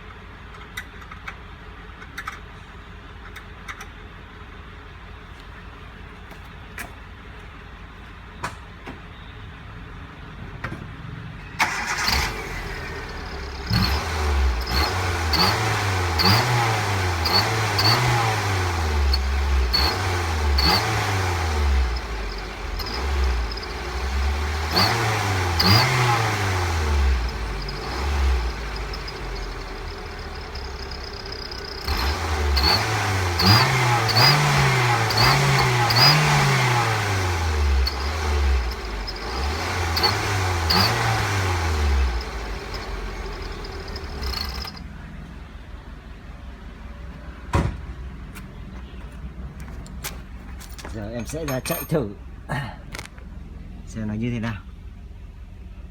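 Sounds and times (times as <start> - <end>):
car engine revving: 11.6 - 45.4.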